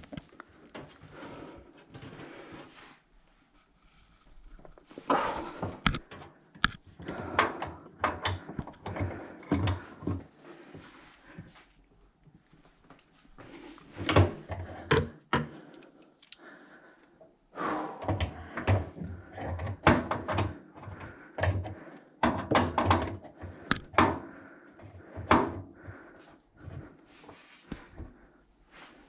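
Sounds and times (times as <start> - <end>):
knocks and clunks of handled objects: 4.6 - 10.3, 13.8 - 16.4, 18.0 - 28.2.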